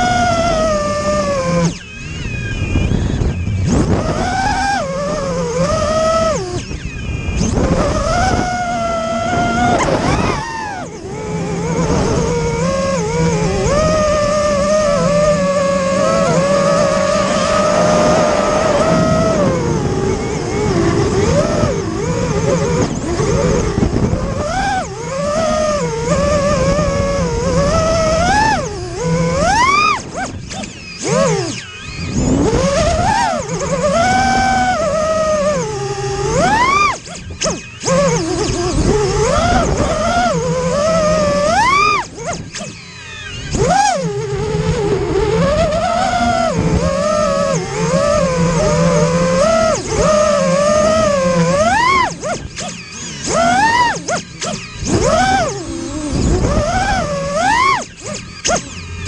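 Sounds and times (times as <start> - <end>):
drone motors whining: 0.0 - 59.0
low rushing noise: 14.3 - 21.4.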